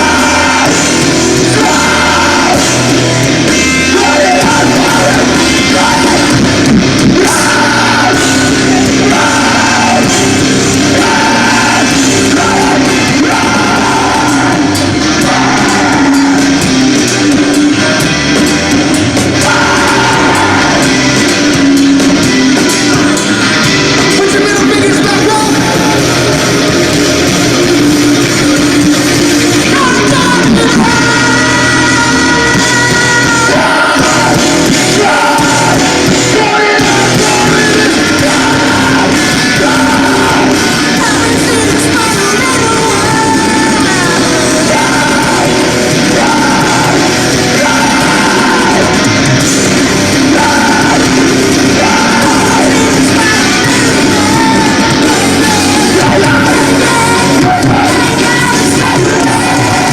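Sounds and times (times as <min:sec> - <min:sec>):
distorted electric guitars: 0:00.0 - 0:59.9
drums: 0:00.0 - 0:59.9
live rock band playing: 0:00.0 - 0:59.9
vocalist singing and yelling: 0:00.0 - 0:59.9.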